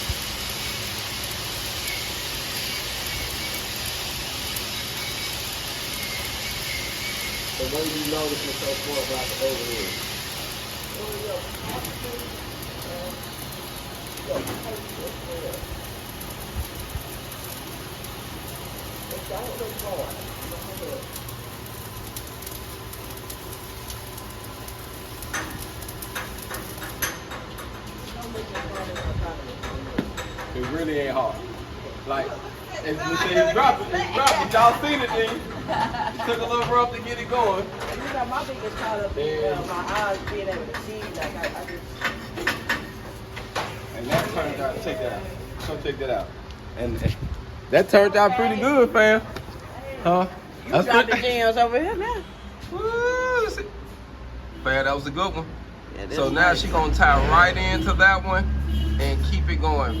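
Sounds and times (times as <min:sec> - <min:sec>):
sharp welding pops: 0:00.0 - 0:31.0
welding arc crackling: 0:00.0 - 0:53.8, 0:56.1 - 1:00.0.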